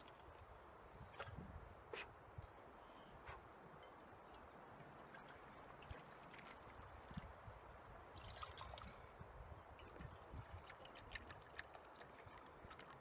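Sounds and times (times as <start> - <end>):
lake water lapping: 4.1 - 7.3, 8.1 - 13.0.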